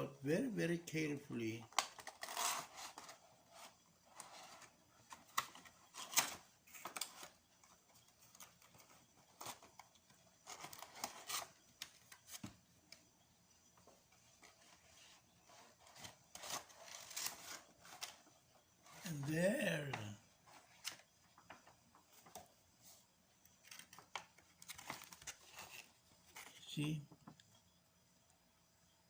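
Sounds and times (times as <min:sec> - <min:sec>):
box packaging rustling and clicking: 0:01.7 - 0:12.6, 0:14.4 - 0:18.3, 0:23.5 - 0:26.6.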